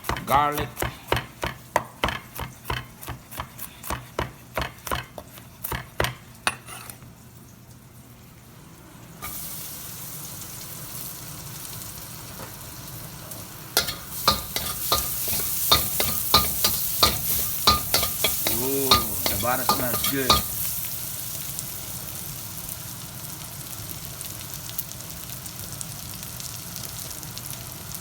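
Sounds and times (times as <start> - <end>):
knife chopping garlic on a board: 0.0 - 6.2
garlic sizzling in a wok: 0.0 - 6.3, 9.1 - 28.0
utensil scraping and knocking a wok: 0.0 - 7.0, 13.8 - 20.8.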